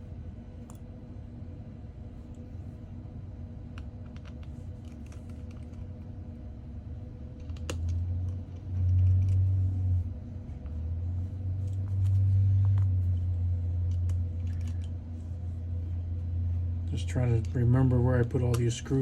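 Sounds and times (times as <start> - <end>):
low hum: 0.0 - 19.0.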